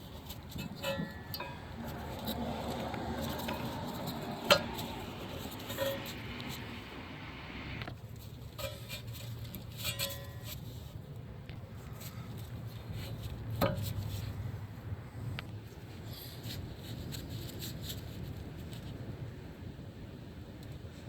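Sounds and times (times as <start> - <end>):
metal tools clinking and clattering: 0.6 - 2.3.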